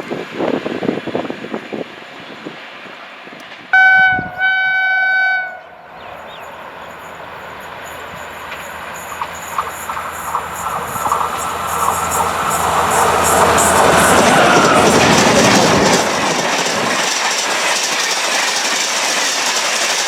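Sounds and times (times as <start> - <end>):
approaching train noise: 0.0 - 20.0
train whine: 0.0 - 20.0
locomotive horn blasts: 3.7 - 5.9
wheels clicking rhythmically: 7.0 - 20.0.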